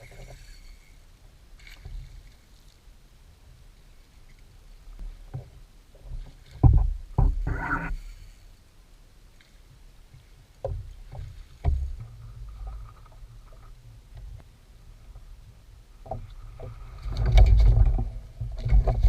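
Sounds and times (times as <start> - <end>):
knocks against kayak hull: 6.6 - 7.6.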